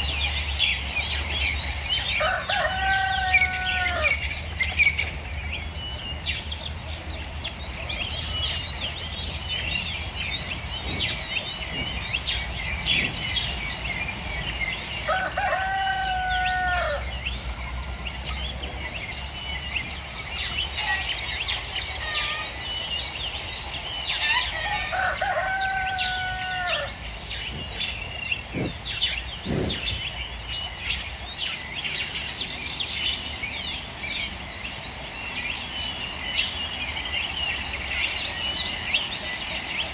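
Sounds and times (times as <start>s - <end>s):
birds chirping: 0.0s - 39.9s
rooster crowing: 2.2s - 4.2s, 15.1s - 17.1s, 24.2s - 27.0s.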